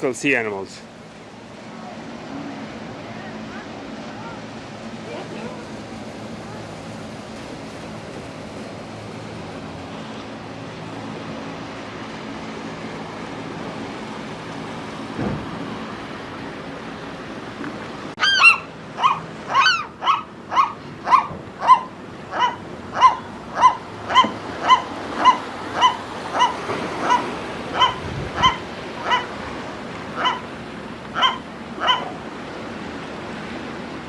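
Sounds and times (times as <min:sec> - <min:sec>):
gull calling: 0:18.2 - 0:29.4, 0:30.1 - 0:30.5, 0:31.2 - 0:32.2.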